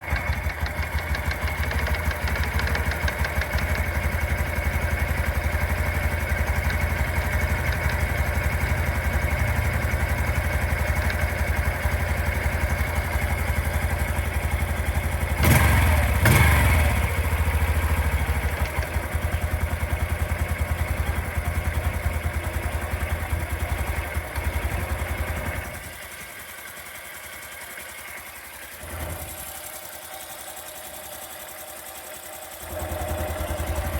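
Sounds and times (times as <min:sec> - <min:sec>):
motorcycle engine idling with rattle: 0:00.0 - 0:33.9
engine revving: 0:15.1 - 0:19.2.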